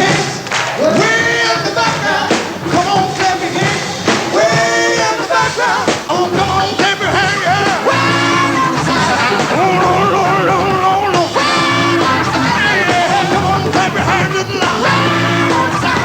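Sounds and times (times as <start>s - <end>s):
rock band playing: 0.0s - 16.0s
person singing: 4.3s - 16.0s.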